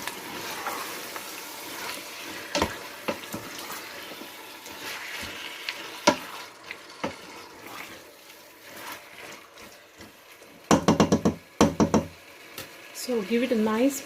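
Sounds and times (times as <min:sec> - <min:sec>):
chicken sizzling in a pan: 0:00.0 - 0:14.0
spoon knocking against pan: 0:10.7 - 0:12.2.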